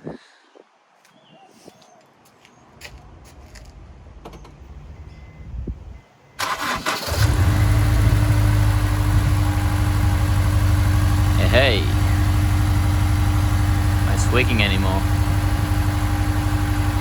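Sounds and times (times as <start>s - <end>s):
engine starter cranking: 6.4s - 9.5s
car engine idling: 6.4s - 17.0s.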